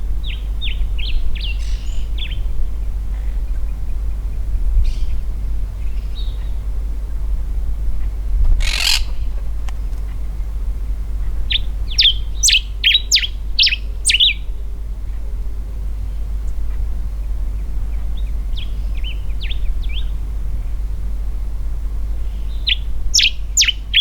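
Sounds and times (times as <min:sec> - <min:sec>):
steady low rumble: 0:00.0 - 0:22.3
finch singing whistled notes: 0:08.6 - 0:09.2.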